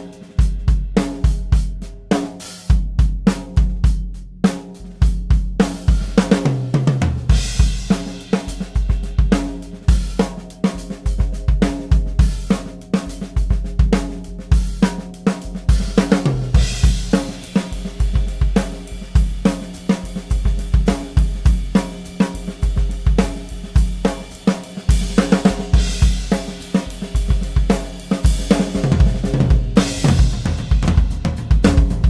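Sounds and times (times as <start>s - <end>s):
drum kit groove: 0.0s - 32.0s.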